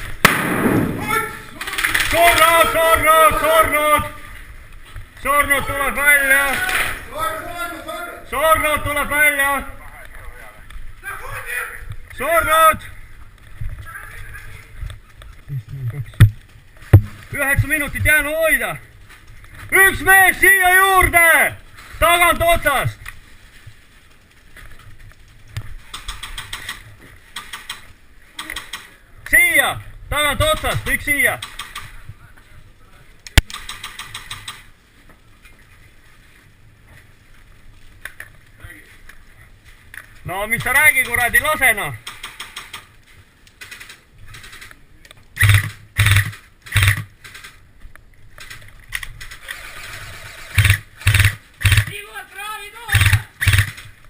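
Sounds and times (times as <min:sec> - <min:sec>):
airsoft guns firing rapid clicks: 0:00.2 - 0:02.5, 0:25.9 - 0:28.9, 0:30.5 - 0:31.9, 0:33.4 - 0:34.7, 0:42.0 - 0:42.9, 0:45.4 - 0:47.6, 0:48.4 - 0:52.0, 0:52.9 - 0:54.0
airsoft rifle bursts: 0:45.4 - 0:47.6, 0:49.3 - 0:52.1, 0:52.9 - 0:53.9.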